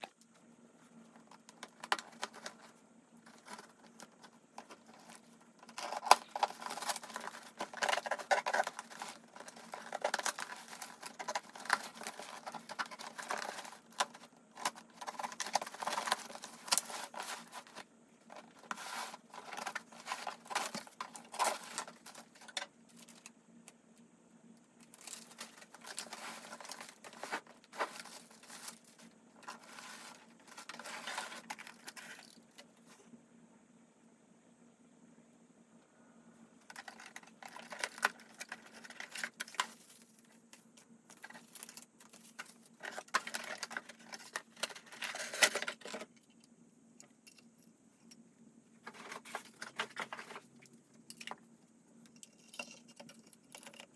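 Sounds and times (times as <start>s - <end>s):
packaging crinkling and tearing: 1.5s - 23.3s, 24.8s - 32.4s.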